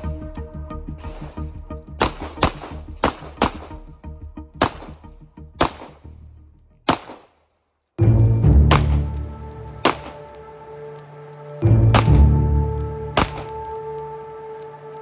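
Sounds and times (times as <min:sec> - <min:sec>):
background music: 0:00.0 - 0:15.0
pistol shots: 0:02.0 - 0:03.9, 0:04.6 - 0:06.1, 0:06.8 - 0:07.5, 0:08.6 - 0:09.1, 0:09.8 - 0:10.2, 0:11.9 - 0:12.4, 0:13.1 - 0:13.6.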